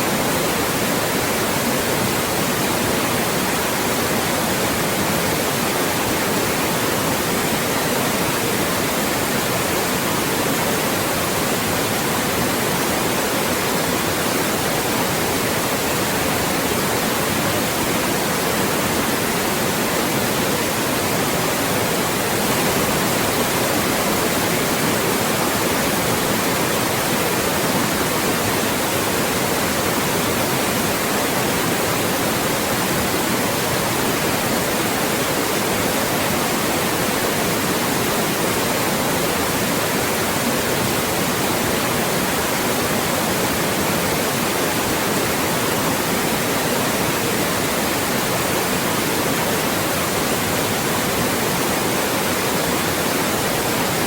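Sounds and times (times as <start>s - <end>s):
white noise hiss: 0.0s - 54.0s.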